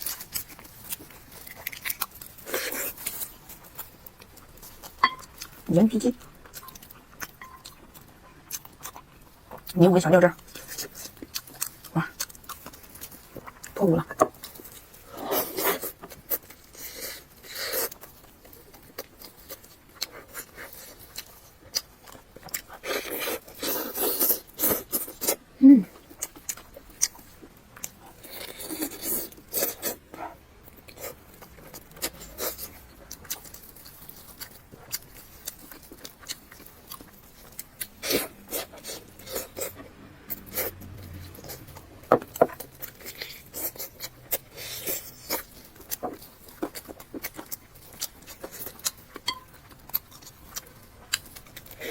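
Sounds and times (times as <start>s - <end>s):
chewing and biting food: 0.0s - 51.9s
person humming: 25.6s - 25.9s.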